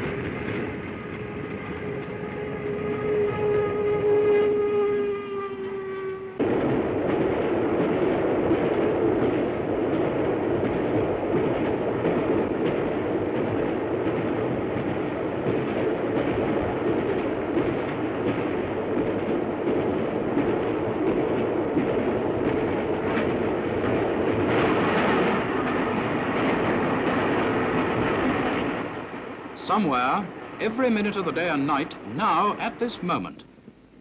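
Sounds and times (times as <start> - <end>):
steam locomotive whistle: 0.0 - 6.4
steam train running at speed: 0.0 - 34.0.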